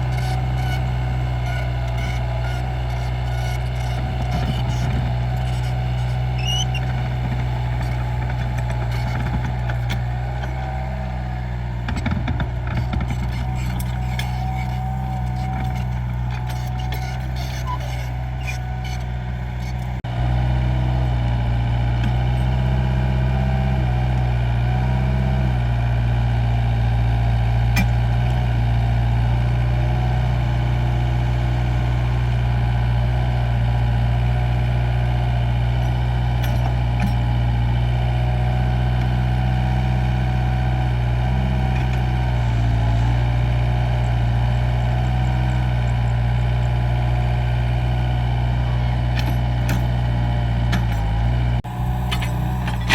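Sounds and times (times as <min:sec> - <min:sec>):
diesel engine running: 0:00.0 - 0:52.9.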